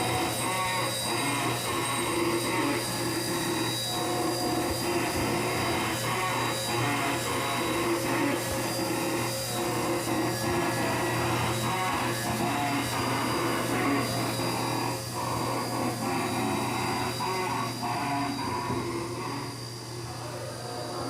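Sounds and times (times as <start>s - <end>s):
rasping metal cutting: 0.0s - 19.6s
high-pitched spindle whine: 0.0s - 21.0s.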